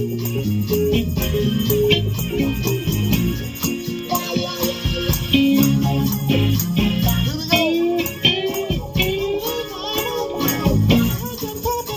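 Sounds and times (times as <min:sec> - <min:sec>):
plucked strings and bass: 0:00.0 - 0:07.6, 0:10.4 - 0:11.8
tambourine shaking: 0:00.0 - 0:11.9
person singing: 0:04.0 - 0:11.9.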